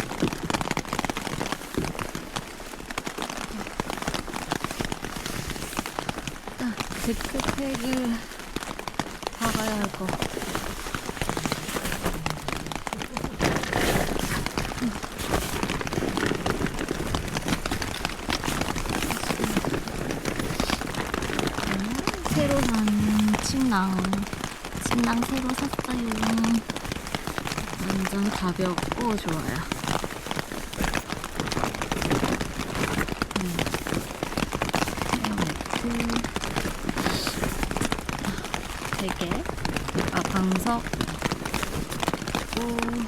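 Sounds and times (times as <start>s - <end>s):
rain hitting a tent: 0.0s - 43.0s.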